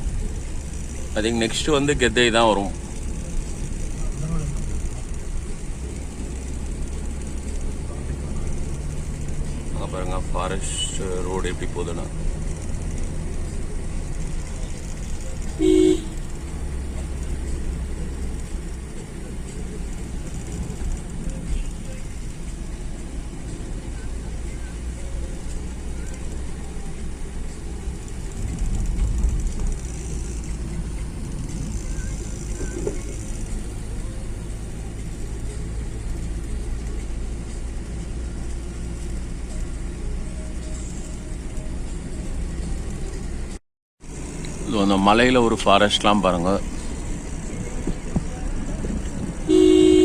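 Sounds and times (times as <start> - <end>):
car driving rumble: 0.0 - 50.0
road vehicle engine and tyre noise: 0.0 - 50.0
car horn toot: 15.6 - 16.3, 49.4 - 50.0.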